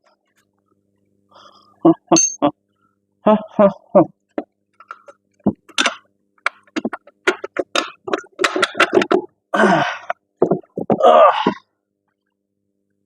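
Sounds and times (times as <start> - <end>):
man grunting and straining: 1.8 - 2.5, 9.5 - 11.7
man chuckling: 1.8 - 2.6, 3.2 - 4.2.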